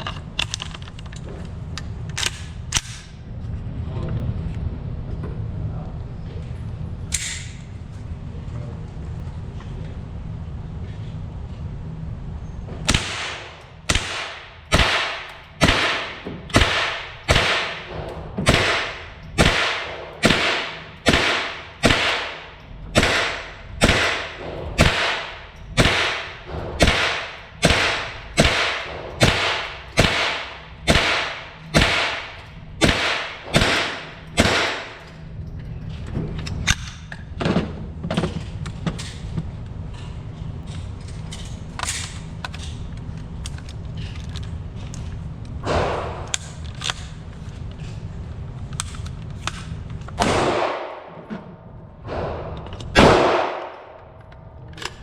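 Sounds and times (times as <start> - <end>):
rifle shots: 12.9 - 35.1, 50.2 - 51.2, 52.1 - 54.0.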